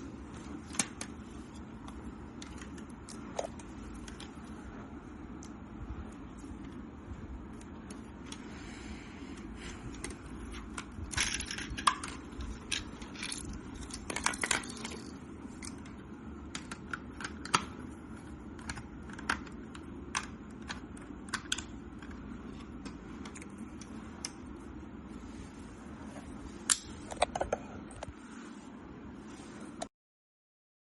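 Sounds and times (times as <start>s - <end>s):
plastic bricks clicking and rattling: 9.9s - 15.9s, 18.6s - 22.2s.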